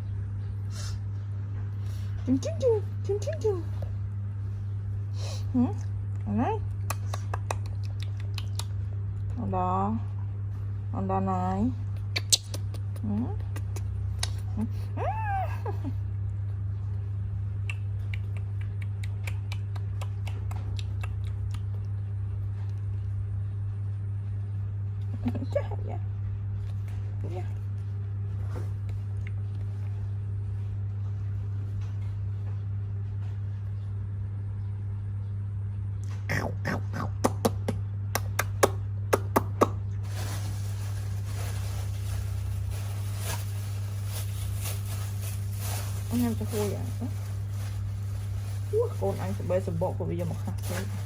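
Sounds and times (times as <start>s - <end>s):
steady low hum: 0.0s - 51.0s
monkey chewing and lip smacking: 17.6s - 22.9s.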